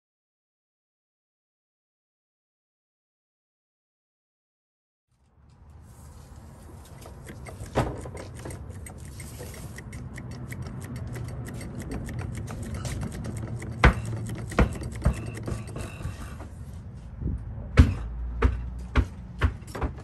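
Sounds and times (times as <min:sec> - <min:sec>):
vehicle rumble: 0:05.2 - 0:20.0
light ticking: 0:06.7 - 0:15.9.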